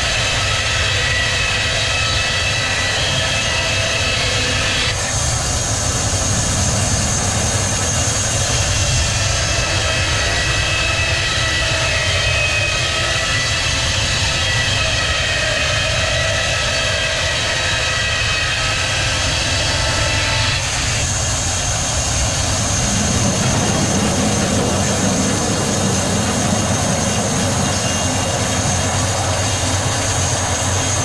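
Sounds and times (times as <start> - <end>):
sawmill machinery whining: 0.0 - 31.0.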